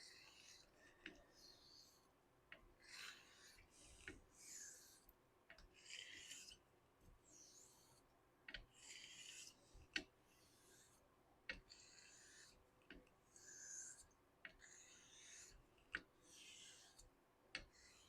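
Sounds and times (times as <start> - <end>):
razor blade sliding on whetstone: 2.8 - 5.1, 16.3 - 17.1.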